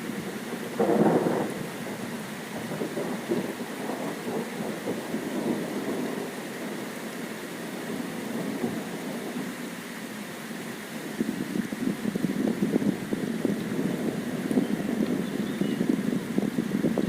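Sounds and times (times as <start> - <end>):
steady rain: 0.0 - 17.0
thunder rumble: 11.2 - 17.0.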